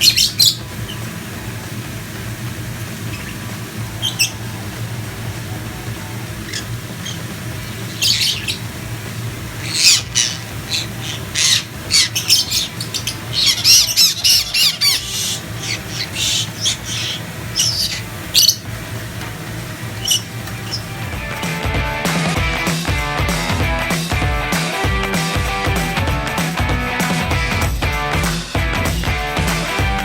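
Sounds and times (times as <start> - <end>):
parrots squawking: 0.0 - 1.3, 2.9 - 21.8
steady low hum: 0.0 - 23.7.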